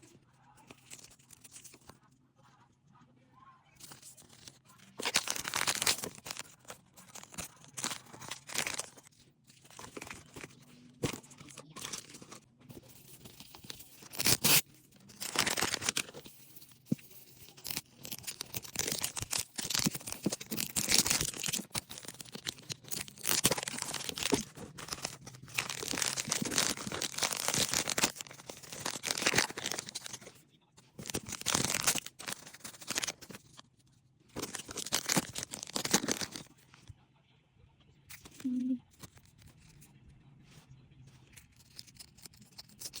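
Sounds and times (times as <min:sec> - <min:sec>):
plastic packaging tearing and crinkling: 0:03.8 - 0:33.6, 0:34.4 - 0:36.5, 0:41.4 - 0:43.0.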